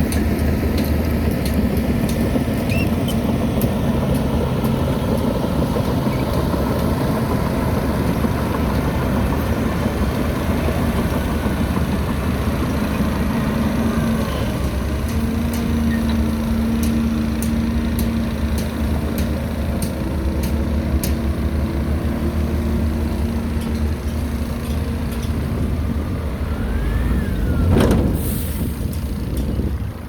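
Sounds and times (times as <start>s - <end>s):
diesel machinery running: 0.0s - 30.0s
loud burst: 26.4s - 28.9s
hiss of air: 26.6s - 29.2s.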